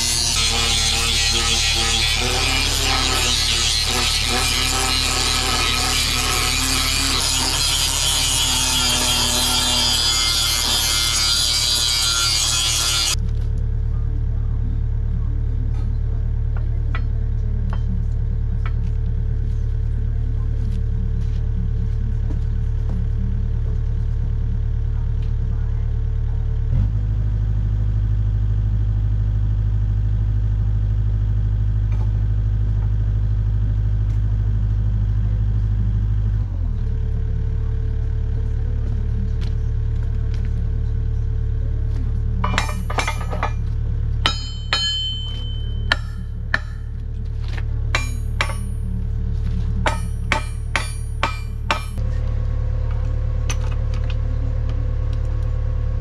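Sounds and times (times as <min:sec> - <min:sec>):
low machine drone: 0:00.0 - 0:56.0
sharp metallic clanks: 0:42.4 - 0:43.6, 0:44.2 - 0:46.9, 0:47.9 - 0:48.9, 0:49.8 - 0:52.0.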